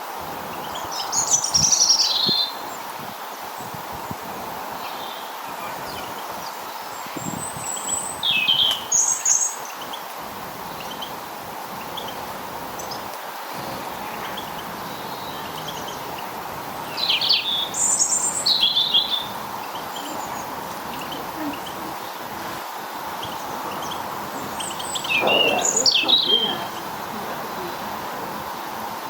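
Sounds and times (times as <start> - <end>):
garden birds chirping: 0.0 - 29.0
steady background hiss: 0.0 - 29.0.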